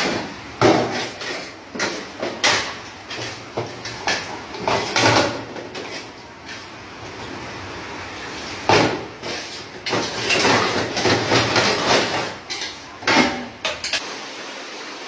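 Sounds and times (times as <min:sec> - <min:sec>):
household bangs knocks and clanks: 0:00.0 - 0:02.8, 0:08.7 - 0:12.3.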